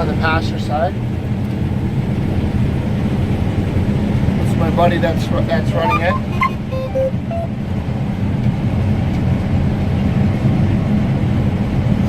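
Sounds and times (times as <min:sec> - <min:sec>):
combine harvester engine drone: 0:00.0 - 0:12.0.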